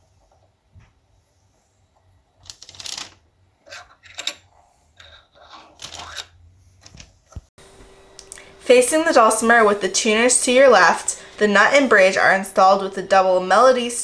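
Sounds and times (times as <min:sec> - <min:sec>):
parts clicking and rattling: 0:02.4 - 0:07.5.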